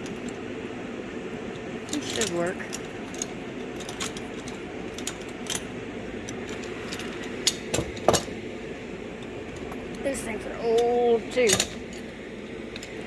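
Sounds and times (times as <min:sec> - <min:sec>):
steady low hum: 0:00.0 - 0:13.0
metal clamps clinking and rattling: 0:01.9 - 0:08.3, 0:09.2 - 0:12.1.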